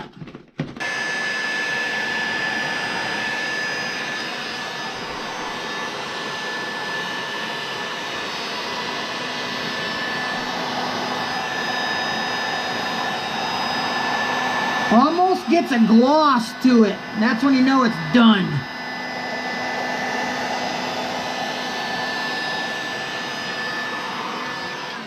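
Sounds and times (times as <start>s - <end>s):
hot-air blower whining: 0.8s - 25.0s.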